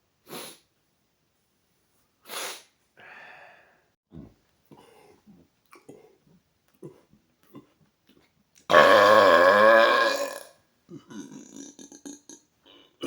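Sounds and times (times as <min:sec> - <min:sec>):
person breathing and sniffing: 0:00.3 - 0:00.7, 0:02.3 - 0:03.8.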